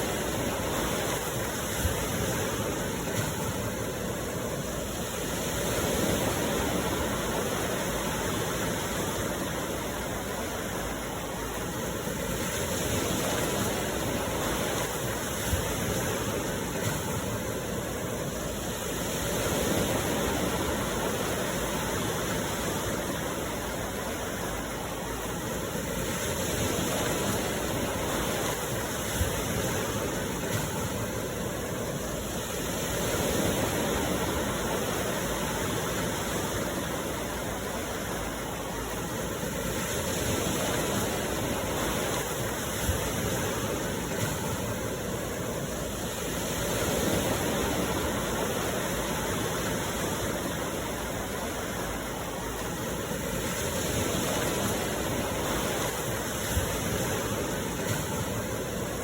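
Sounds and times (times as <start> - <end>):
sea waves washing ashore: 0.0 - 59.0.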